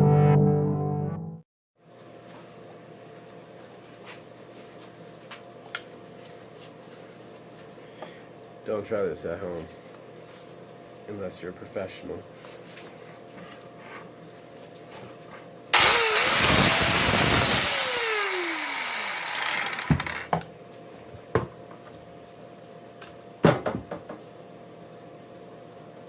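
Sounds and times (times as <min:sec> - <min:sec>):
power grinder on metal: 0:15.8 - 0:20.3.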